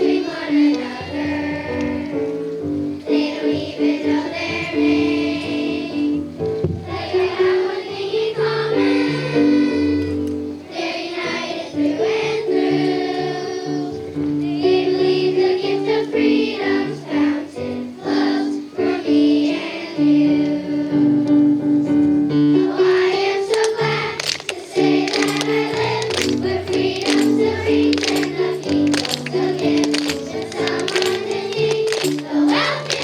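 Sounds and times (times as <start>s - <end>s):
children's choir singing: 0.0s - 33.0s
instrumental accompaniment: 21.8s - 33.0s.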